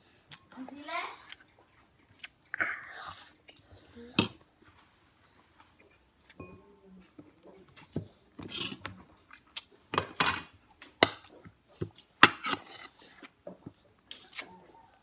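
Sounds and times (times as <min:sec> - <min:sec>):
scraping and rustling: 0:04.6 - 0:06.1.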